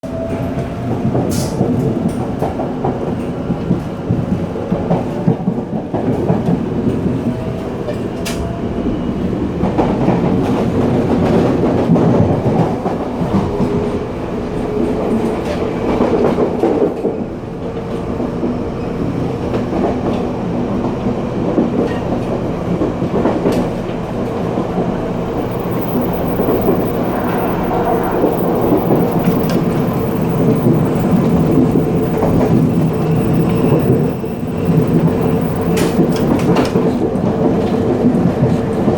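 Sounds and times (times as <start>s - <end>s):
train wheels clattering on track: 0.0s - 38.9s
gangway connection rattling: 21.6s - 38.9s.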